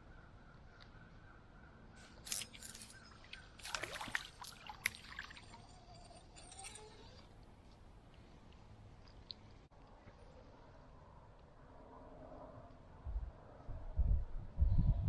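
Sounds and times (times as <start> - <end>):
water splashing and sloshing: 2.2 - 10.3.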